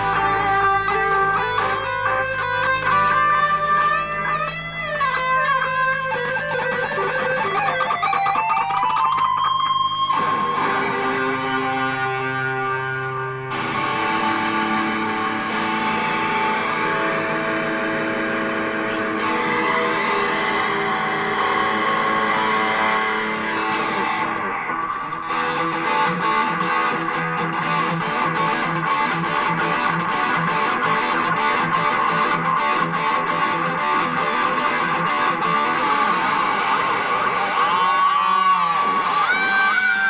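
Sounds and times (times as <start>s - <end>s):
electric guitar lead: 0.0s - 40.0s.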